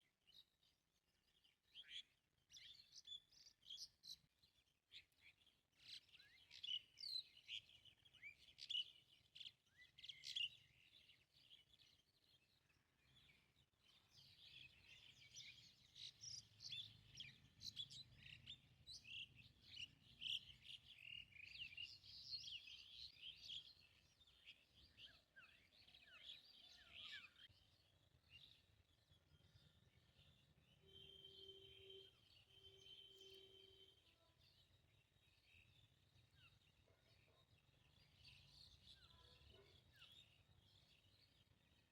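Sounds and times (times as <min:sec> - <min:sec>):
small birds chirping: 0:00.0 - 0:41.9.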